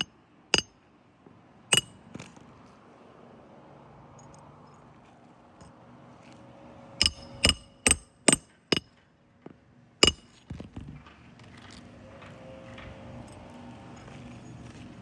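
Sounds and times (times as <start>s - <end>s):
hammer striking metal: 0.0s - 0.7s, 1.7s - 2.0s, 7.0s - 8.9s, 10.0s - 10.3s.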